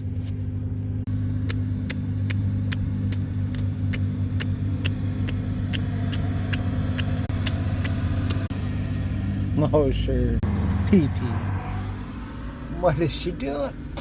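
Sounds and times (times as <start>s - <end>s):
car engine running: 0.0s - 14.0s
turn signal ticking: 1.1s - 9.4s.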